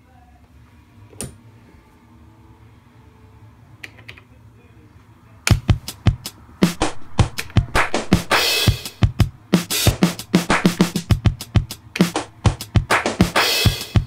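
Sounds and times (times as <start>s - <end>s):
drum machine beat: 5.5s - 14.0s.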